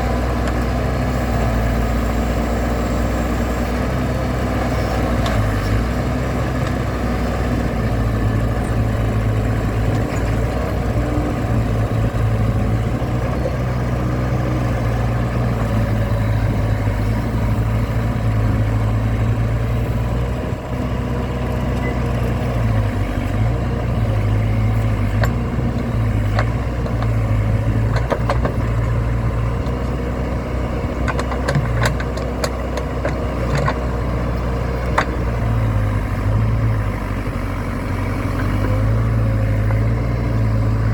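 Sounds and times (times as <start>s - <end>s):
diesel engine running: 0.0s - 40.9s
sharp clicks or knocks: 31.1s - 33.8s.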